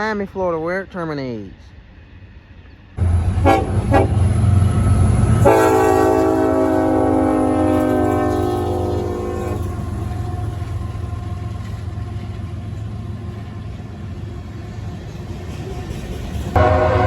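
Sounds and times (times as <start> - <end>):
train rolling past: 0.0 - 17.0
train horn chord: 3.4 - 4.3, 5.4 - 11.0, 16.6 - 17.0.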